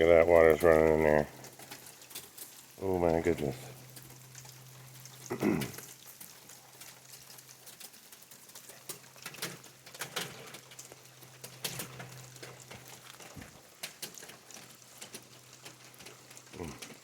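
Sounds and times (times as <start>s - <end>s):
faint steady hiss: 0.0s - 17.0s
rainwater dripping and pattering: 0.0s - 17.0s.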